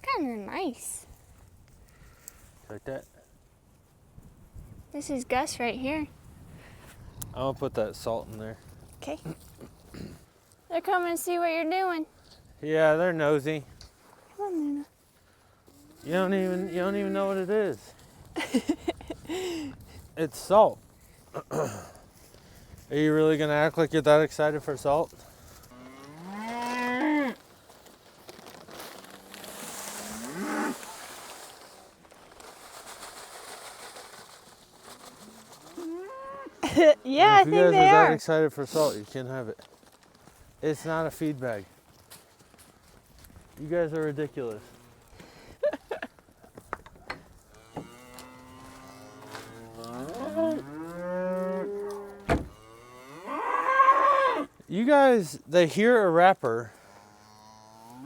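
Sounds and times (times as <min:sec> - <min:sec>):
cow mooing: 0:47.6 - 0:54.5.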